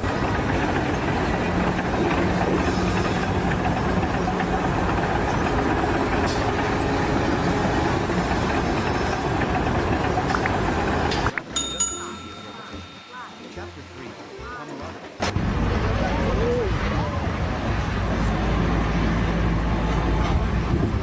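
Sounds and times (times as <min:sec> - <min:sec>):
low steady tone: 0:11.6 - 0:15.2.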